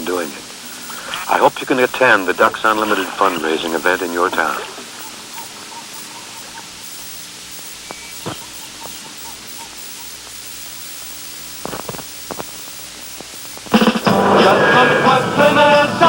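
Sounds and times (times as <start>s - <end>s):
film soundtrack hiss: 0.0s - 16.0s
faint clicks and pops: 4.8s - 14.1s.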